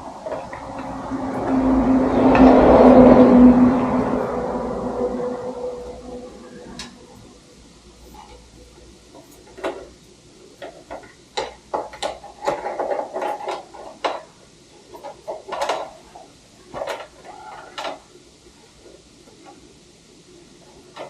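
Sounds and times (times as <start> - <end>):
scraping and rubbing: 0.3 - 10.0
hand tools clicking and knocking: 8.0 - 16.1.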